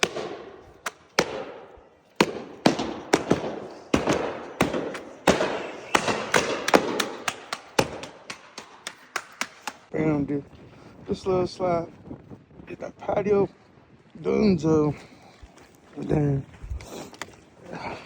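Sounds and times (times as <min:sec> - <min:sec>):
stamping mats slapping concrete: 0:00.0 - 0:01.5, 0:02.1 - 0:09.9.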